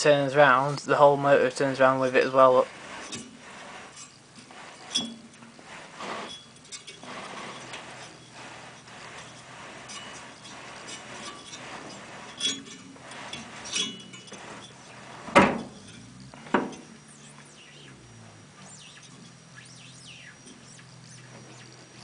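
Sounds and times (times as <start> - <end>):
high falling chirps: 15.7 - 22.0.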